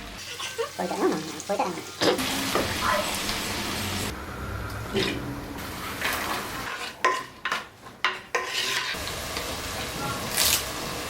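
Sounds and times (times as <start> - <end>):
food sizzling in a pan: 0.0 - 4.1, 8.4 - 11.0
utensil scraping a pan: 5.9 - 9.0.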